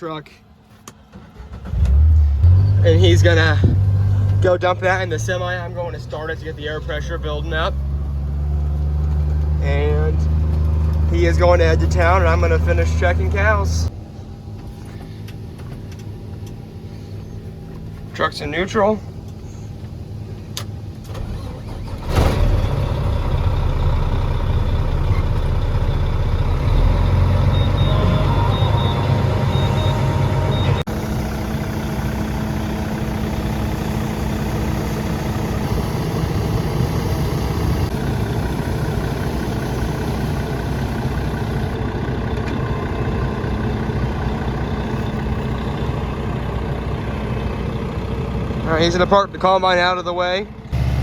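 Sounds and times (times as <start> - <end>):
diesel engines running: 0.0 - 51.0.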